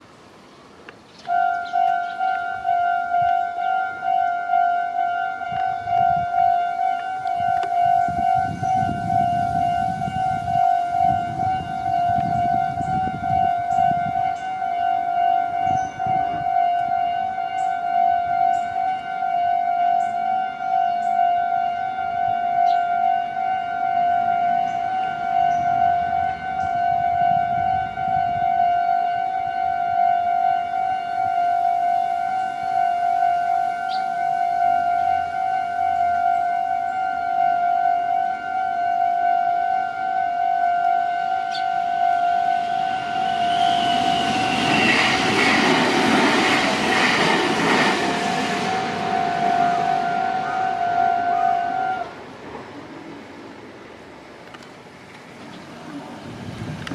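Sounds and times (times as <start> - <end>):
level-crossing warning bell: 1.3 - 52.2.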